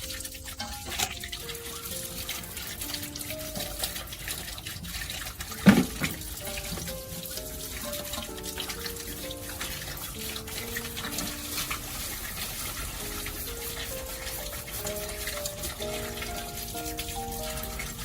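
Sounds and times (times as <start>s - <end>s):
running water: 0.0s - 18.0s
soft background music: 0.0s - 18.0s.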